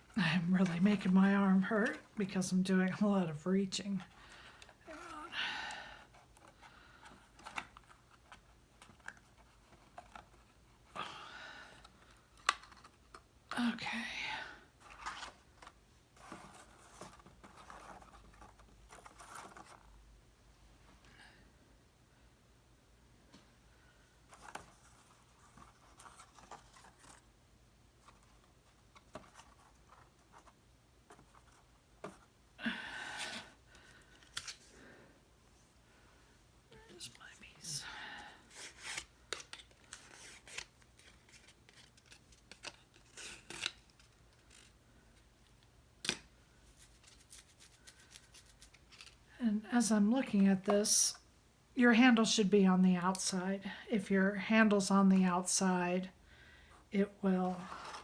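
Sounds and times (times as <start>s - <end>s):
paper rustle: 38.5s - 44.8s.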